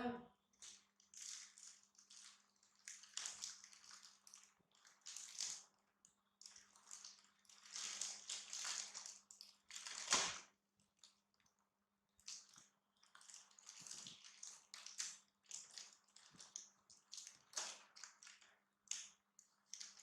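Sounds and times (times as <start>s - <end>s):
plastic bag crinkling: 0.6s - 5.6s, 6.4s - 10.2s.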